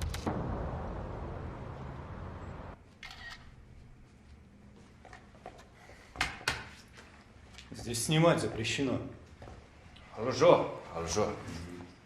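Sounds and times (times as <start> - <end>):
rushing background noise: 0.0 - 2.8
camera shutter clicking: 3.0 - 3.4.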